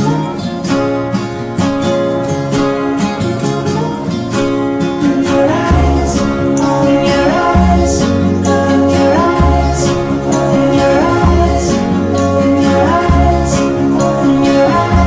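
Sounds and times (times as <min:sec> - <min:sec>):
high sliding melody line: 0:00.0 - 0:15.0
strummed acoustic guitar: 0:00.0 - 0:15.0
deep bass: 0:05.2 - 0:15.0.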